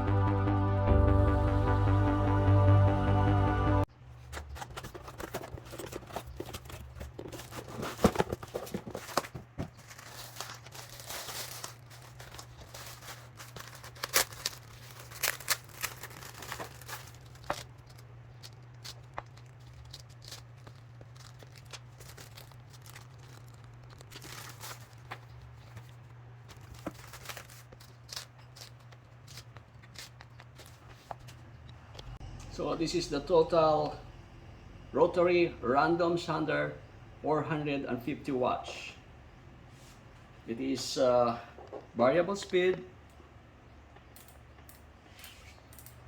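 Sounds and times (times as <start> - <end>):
steady low hum: 0.0 - 46.0
crinkling and rustling: 4.1 - 31.5.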